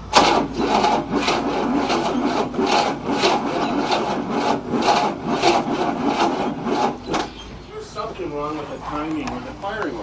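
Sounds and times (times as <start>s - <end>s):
starter motor cranking engine: 0.0s - 7.7s.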